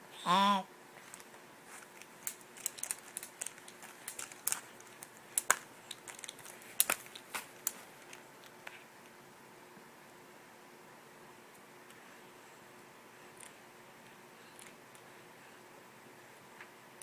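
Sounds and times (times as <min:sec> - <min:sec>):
sharp clicks and crackles: 0:01.1 - 0:08.6.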